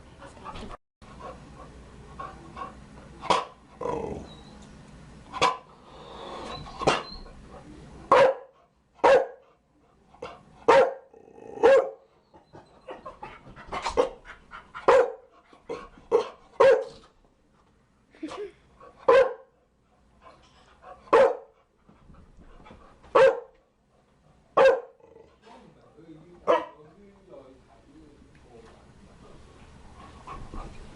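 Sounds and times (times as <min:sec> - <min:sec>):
dog barking: 0:03.3 - 0:03.6, 0:05.4 - 0:05.7, 0:08.1 - 0:09.4, 0:10.7 - 0:12.0, 0:14.9 - 0:15.3, 0:16.6 - 0:17.0, 0:19.1 - 0:19.5, 0:21.1 - 0:21.5, 0:23.1 - 0:23.6, 0:24.6 - 0:25.0, 0:26.4 - 0:26.8.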